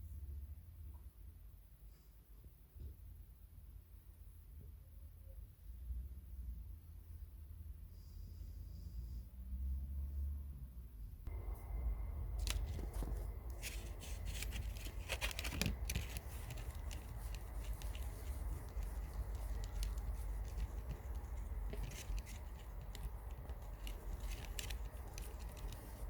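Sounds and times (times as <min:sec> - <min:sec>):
steady low hum: 0:10.7 - 0:26.0
light clicks and scrapes of hand work: 0:12.4 - 0:26.0.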